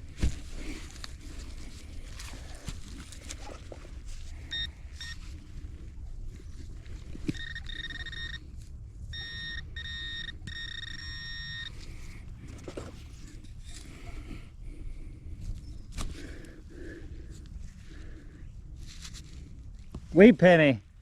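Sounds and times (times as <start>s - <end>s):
metal detector beeping: 4.4s - 5.2s, 7.1s - 12.2s.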